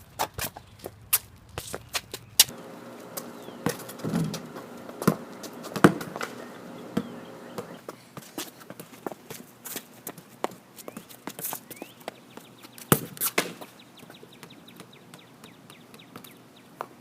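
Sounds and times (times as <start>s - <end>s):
shoes stepping on hard court: 0.2s - 13.8s
faint steady hum: 2.3s - 8.1s
soccer ball taps and knocks: 3.6s - 6.3s.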